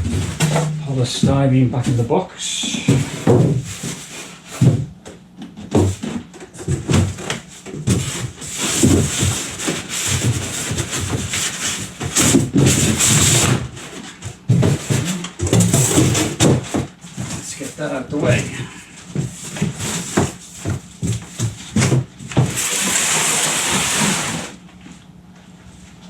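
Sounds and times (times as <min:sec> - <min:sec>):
foam scraping against cardboard: 0:02.9 - 0:04.7, 0:06.9 - 0:24.6.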